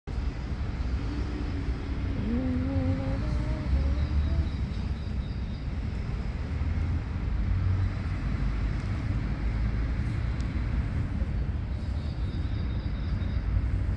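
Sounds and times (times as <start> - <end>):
low outdoor rumble: 0.1 - 13.9
distant voice: 1.3 - 5.2
faint bird chirps: 2.2 - 5.9, 11.7 - 13.7.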